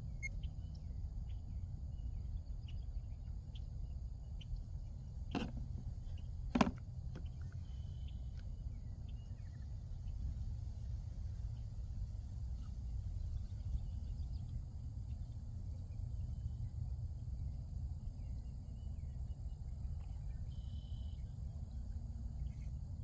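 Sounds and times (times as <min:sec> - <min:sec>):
faint insect chirping: 0:20.4 - 0:23.0.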